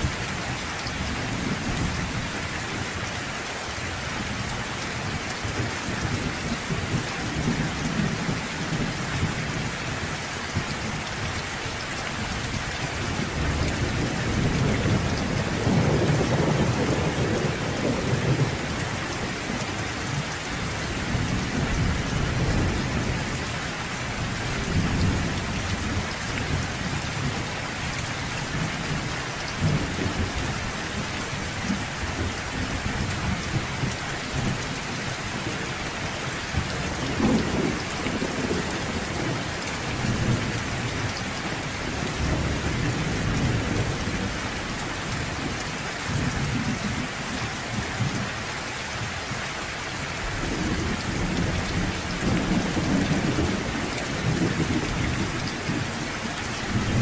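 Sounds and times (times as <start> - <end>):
steady rain falling: 0.0 - 57.0
low rolling thunder: 13.1 - 20.2, 36.6 - 47.1, 50.4 - 56.0, 56.7 - 57.0.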